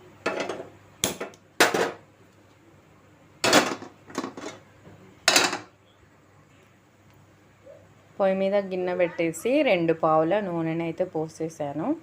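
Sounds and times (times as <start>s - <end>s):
kitchen utensils clattering: 3.4s - 4.6s, 5.3s - 5.7s.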